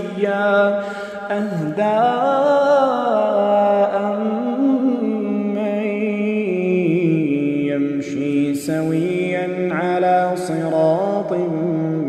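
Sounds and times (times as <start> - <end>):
person chanting recitation: 0.0 - 12.0.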